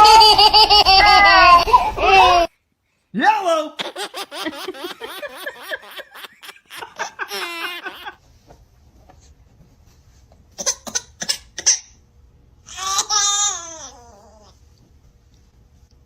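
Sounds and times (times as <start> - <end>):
baby giggling and squealing: 0.0 - 2.5, 3.9 - 8.2.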